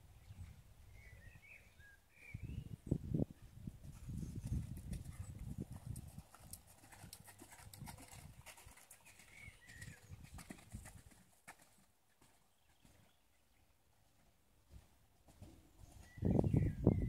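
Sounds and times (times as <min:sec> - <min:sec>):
horse hoofbeats: 0:04.0 - 0:13.2.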